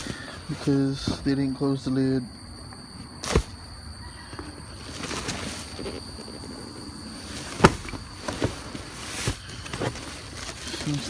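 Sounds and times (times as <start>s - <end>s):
faint high whine: 0.0s - 11.0s
knocks and thuds of trash: 3.2s - 3.6s, 7.3s - 11.0s.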